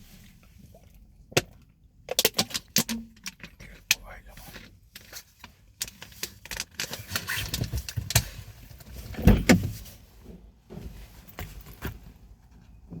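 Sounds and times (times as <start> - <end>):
sharp clicks and knocks: 1.3 - 4.0.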